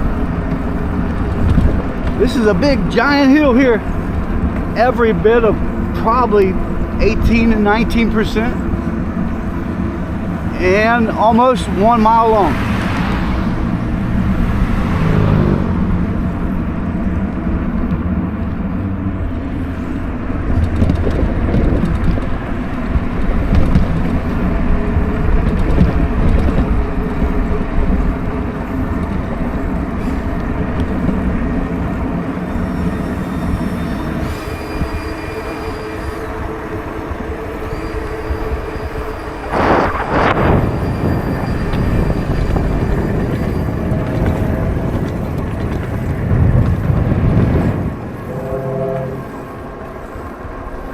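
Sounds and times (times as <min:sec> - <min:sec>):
wind rumble on microphone: 0:00.0 - 0:50.9
electric bike motor whining: 0:13.0 - 0:50.9.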